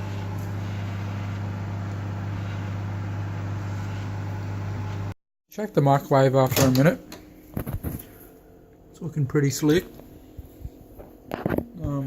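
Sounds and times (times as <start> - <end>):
microwave oven humming: 0.0 - 5.2.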